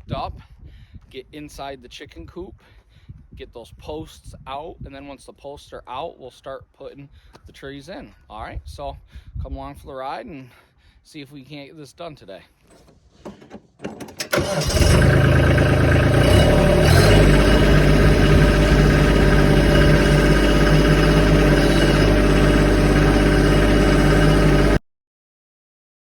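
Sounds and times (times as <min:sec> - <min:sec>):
diesel tractor engine starting and running: 0:12.6 - 0:24.8.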